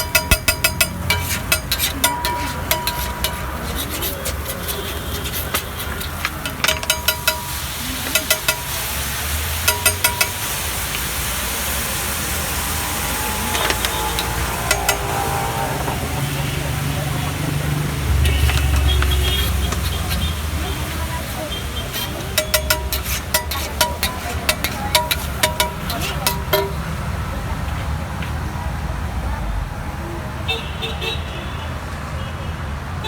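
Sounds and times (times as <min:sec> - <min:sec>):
utensil tapping rapidly: 0:00.0 - 0:11.0, 0:12.9 - 0:27.0
traffic noise: 0:00.0 - 0:33.0.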